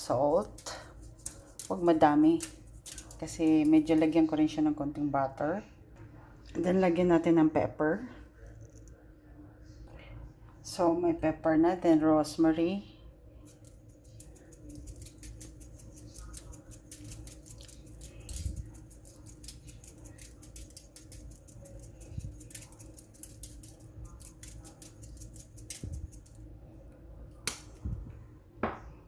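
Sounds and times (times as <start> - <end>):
crisp clicks and snips of herbs: 0.4 - 4.0, 13.4 - 26.4, 27.4 - 27.8.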